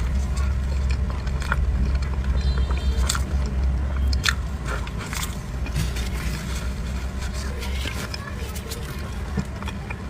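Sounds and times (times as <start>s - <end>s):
pastry being chewed: 0.0s - 10.0s
wet mouth clicks and smacks: 3.0s - 5.7s.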